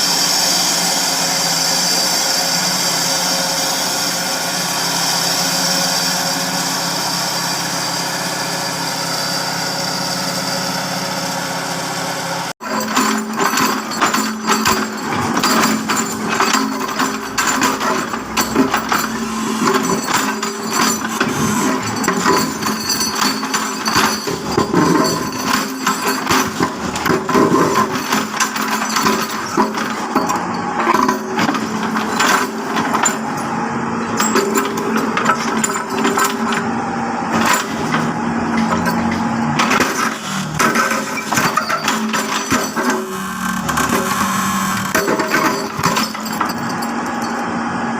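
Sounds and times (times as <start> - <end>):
knocks and hammering: 12.6 - 33.5.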